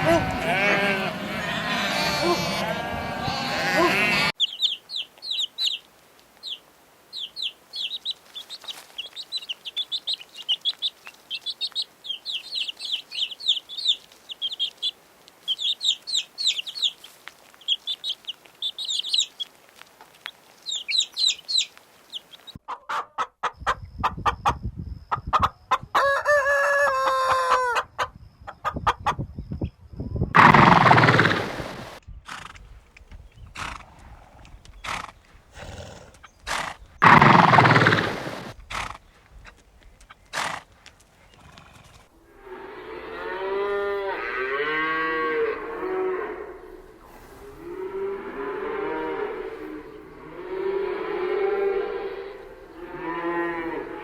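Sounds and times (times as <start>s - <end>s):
rooster crowing: 0.0s - 4.3s, 26.0s - 27.8s, 30.4s - 32.0s, 37.0s - 38.5s
chickens clucking: 22.6s - 24.6s, 30.4s - 32.0s, 36.2s - 38.6s
chicks peeping: 37.0s - 38.5s.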